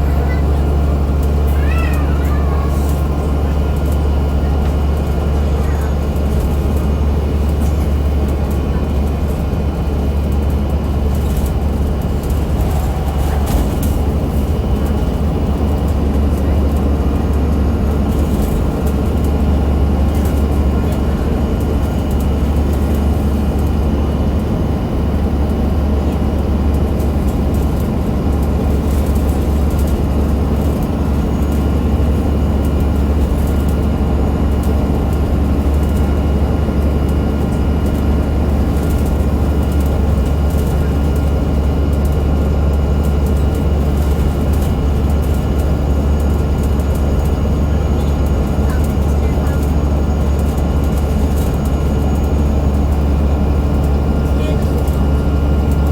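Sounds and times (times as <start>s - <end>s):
bus diesel engine drone: 0.0s - 55.9s.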